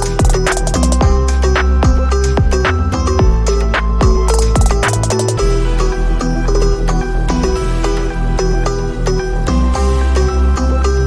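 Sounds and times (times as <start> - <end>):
drum and bass beat: 0.0 - 8.1
heavy sustained bass: 0.0 - 11.0.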